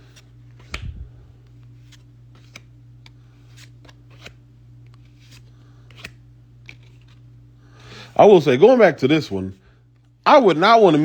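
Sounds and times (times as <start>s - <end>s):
steady low hum: 0.0s - 11.0s
trading cards clicking and flicking: 0.1s - 7.2s.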